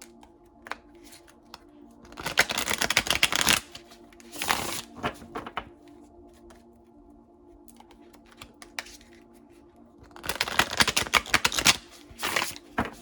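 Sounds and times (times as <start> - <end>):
cards being shuffled: 0.2 - 5.7, 7.7 - 9.2, 10.0 - 13.0
card clicks: 7.7 - 9.2.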